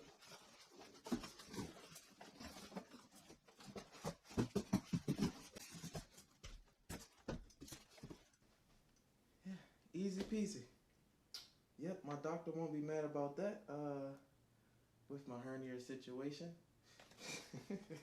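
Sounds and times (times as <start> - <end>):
cardboard rustling and scraping: 0.0 - 8.4.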